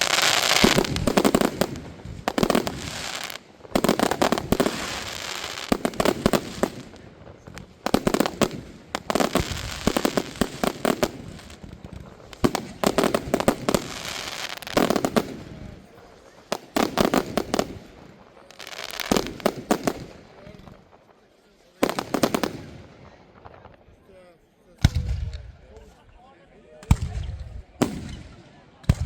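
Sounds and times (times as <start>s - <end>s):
fireworks bangs and crackle: 0.0s - 24.1s, 24.8s - 25.9s, 26.8s - 29.0s.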